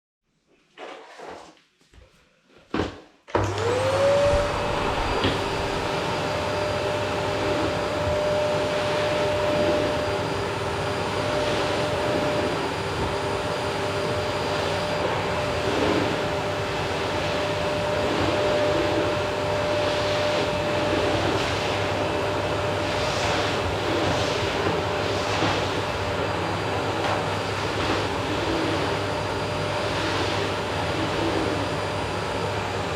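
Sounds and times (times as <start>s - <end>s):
vacuum cleaner motor whine: 2.8s - 32.9s.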